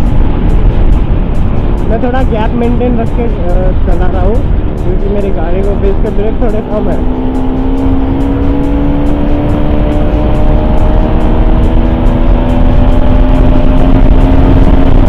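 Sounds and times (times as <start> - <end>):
motorcycle engine running: 0.0 - 15.0
wind rumble on microphone: 0.0 - 15.0.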